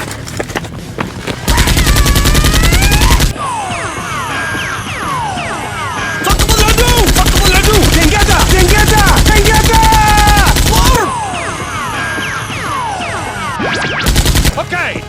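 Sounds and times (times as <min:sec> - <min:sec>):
automatic gunfire: 0:01.5 - 0:03.3, 0:06.3 - 0:11.0, 0:14.1 - 0:14.6.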